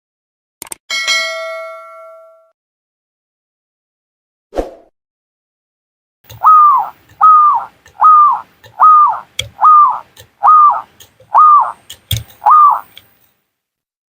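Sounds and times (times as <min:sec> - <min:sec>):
dove cooing: 0:06.3 - 0:13.0
faint clicks: 0:06.3 - 0:13.3.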